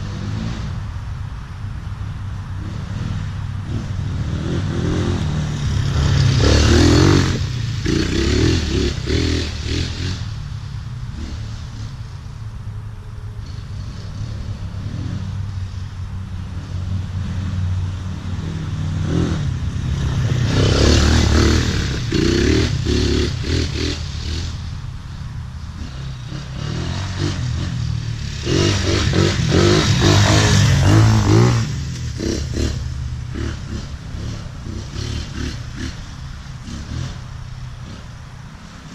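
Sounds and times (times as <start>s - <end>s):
quad engine revving: 2.6s - 10.4s, 16.6s - 24.7s, 25.8s - 38.9s.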